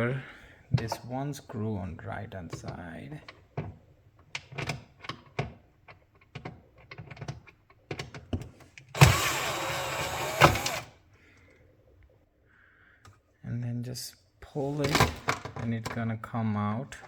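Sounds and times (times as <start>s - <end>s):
light clicks and handling knocks: 0.7s - 1.2s, 2.2s - 9.0s
cordless drill running: 9.0s - 11.0s.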